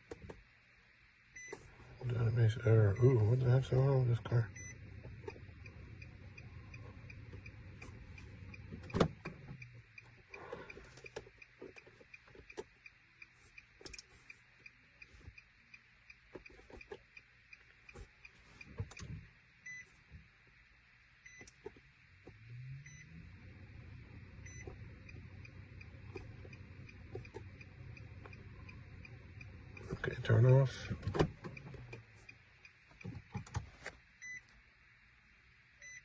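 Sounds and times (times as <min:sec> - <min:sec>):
low hum: 0:00.0 - 0:33.0
steady light ticking: 0:02.9 - 0:19.8, 0:20.8 - 0:33.4
short electronic beeps: 0:04.5 - 0:04.8, 0:22.8 - 0:23.1, 0:24.4 - 0:25.2
faint clicks and handling noises: 0:05.0 - 0:20.3.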